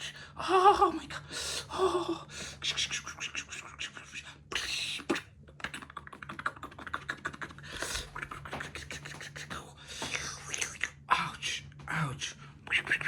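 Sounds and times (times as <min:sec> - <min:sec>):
kitten claws scratching and clicking: 0:05.6 - 0:10.9.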